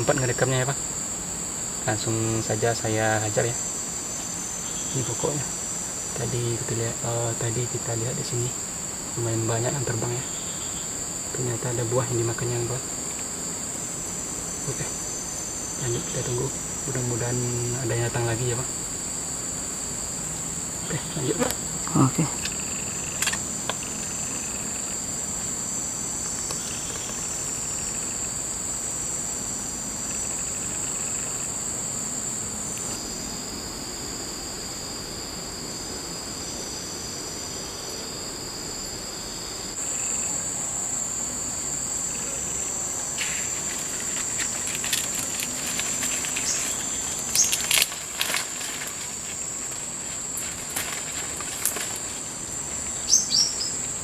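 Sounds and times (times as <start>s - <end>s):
high-pitched insect chorus: 0.0s - 54.0s
sharp clicks and crackles: 43.2s - 49.8s, 50.4s - 52.0s.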